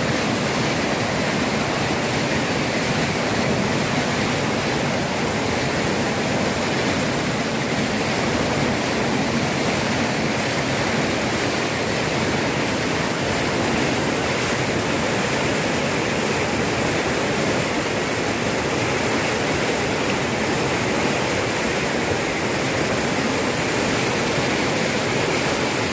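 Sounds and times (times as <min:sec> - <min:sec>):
floodwater rushing: 0:00.0 - 0:25.9.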